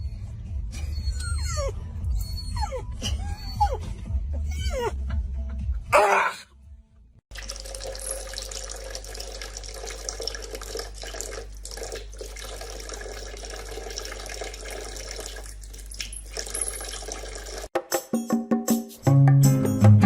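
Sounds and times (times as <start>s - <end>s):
running water: 7.3s - 17.7s.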